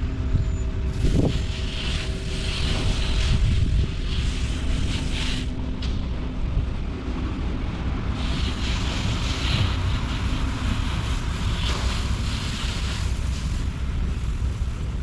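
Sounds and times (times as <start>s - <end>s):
concrete mixer truck rumbling: 0.0s - 15.0s
hose spraying water: 0.9s - 5.6s, 8.1s - 15.0s.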